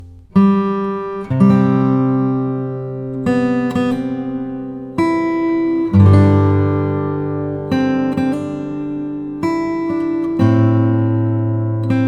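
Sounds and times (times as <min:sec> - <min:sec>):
acoustic guitar chords strummed: 0:00.0 - 0:12.0.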